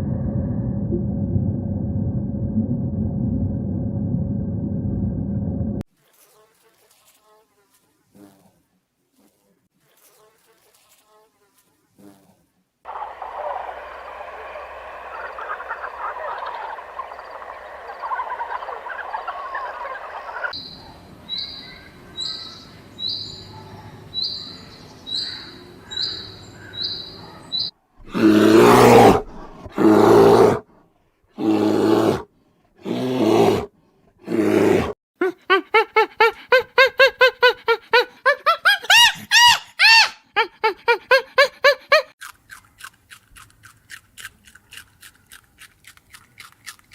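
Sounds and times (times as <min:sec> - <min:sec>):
loud animal calls: 0:12.9 - 0:20.6
rough noisy animal sound: 0:12.9 - 0:30.6.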